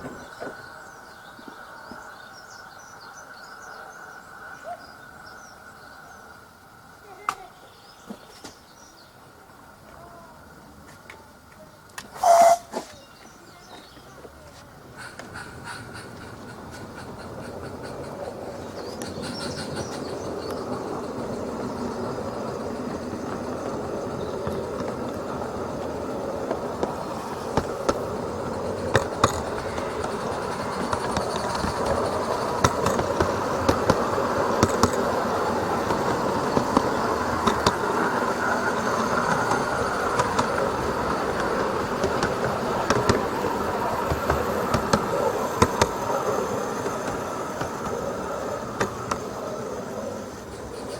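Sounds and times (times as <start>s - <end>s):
model train wheels rumbling and clicking: 10.6s - 50.9s.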